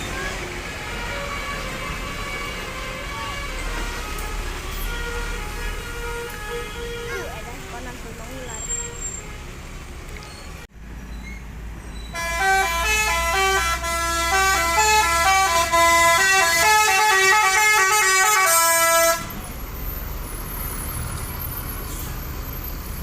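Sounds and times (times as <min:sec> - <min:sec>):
bus engine and road rumble: 0:00.0 - 0:23.0
melody horn playing a tune: 0:12.2 - 0:19.2.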